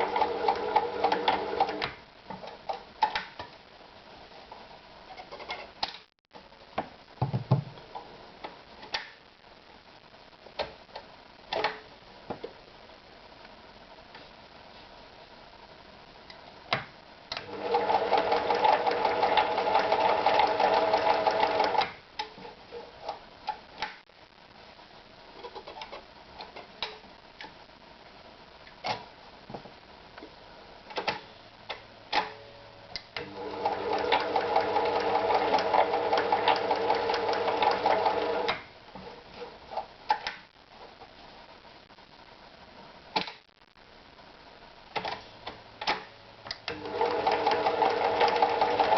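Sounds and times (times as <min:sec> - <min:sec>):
sewing machine running: 0:17.5 - 0:21.8, 0:33.3 - 0:38.5, 0:46.8 - 0:48.9.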